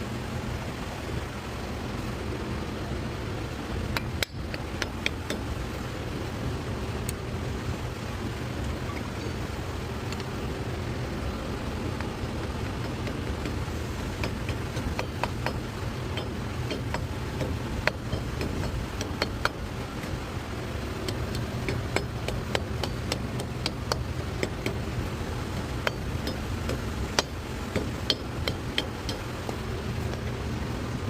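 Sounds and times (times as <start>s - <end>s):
low shop hum: 0.0s - 31.0s
metallic tool clicks and taps: 3.9s - 5.4s, 14.2s - 19.6s, 21.0s - 24.8s, 25.8s - 30.3s.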